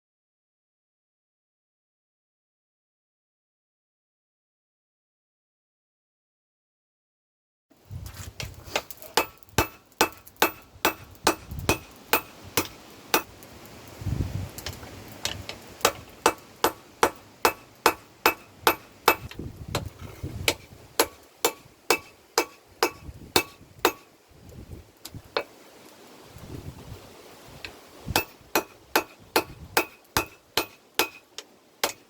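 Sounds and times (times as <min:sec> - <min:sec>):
hammer forging steel on anvil: 0:08.7 - 0:13.4, 0:15.8 - 0:19.3, 0:20.5 - 0:24.1, 0:28.2 - 0:32.0.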